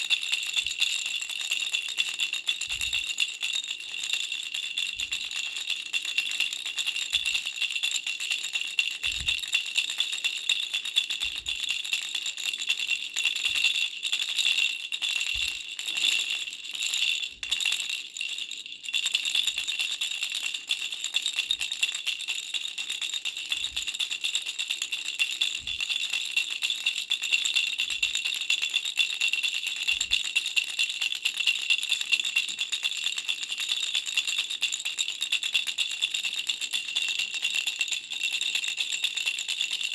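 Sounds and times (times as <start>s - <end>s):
baby rattle jingling: 0.0s - 30.7s.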